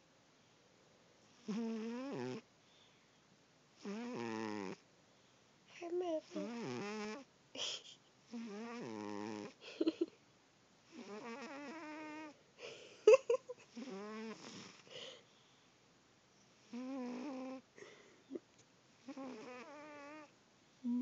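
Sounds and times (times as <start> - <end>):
cat snoring: 1.3 - 2.4, 3.8 - 4.8, 6.2 - 7.3, 8.3 - 9.6, 10.9 - 12.4, 13.7 - 15.2, 16.6 - 18.0, 19.0 - 21.0.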